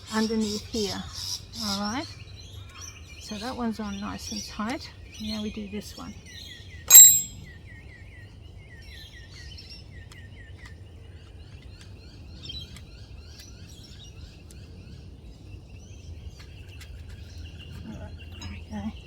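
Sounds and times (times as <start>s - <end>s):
sharp metallic clink: 6.9s - 7.4s.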